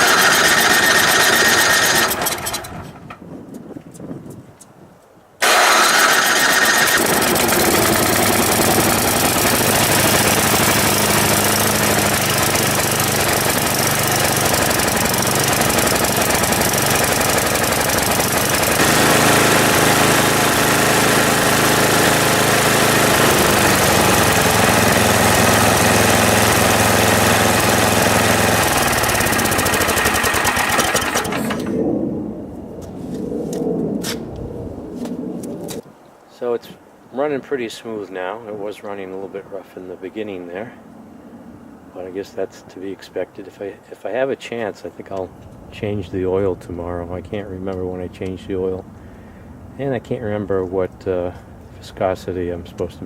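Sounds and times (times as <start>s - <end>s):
snowblower engine running: 0.0s - 3.0s, 5.4s - 31.8s.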